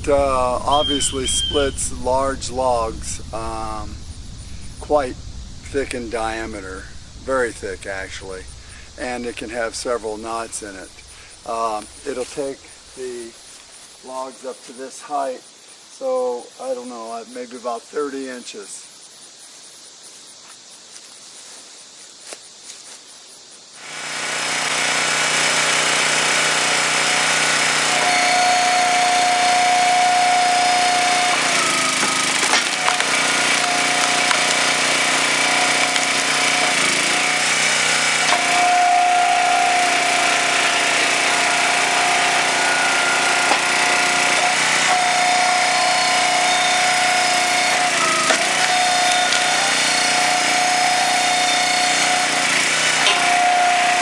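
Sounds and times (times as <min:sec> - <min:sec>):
high hydraulic whine: 0:00.0 - 0:17.5, 0:23.8 - 0:54.0
small gas engine running: 0:23.8 - 0:54.0.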